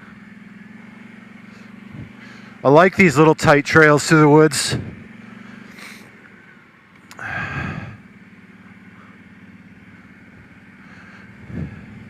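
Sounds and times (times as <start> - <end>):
atv engine running: 0.0 - 12.0
breathy rush with click: 7.0 - 7.4.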